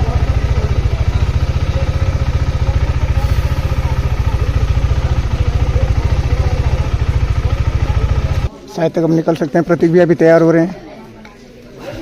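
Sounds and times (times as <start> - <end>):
motorcycle engine idling: 0.0 - 8.5.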